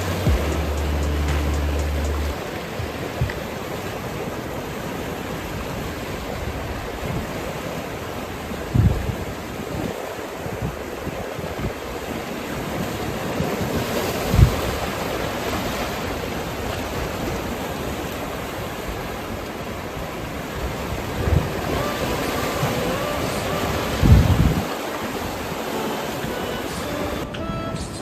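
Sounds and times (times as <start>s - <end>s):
low thumps: 0.0s - 3.4s
sea waves washing on shore: 0.0s - 28.0s
wind buffeting microphone: 2.3s - 25.7s.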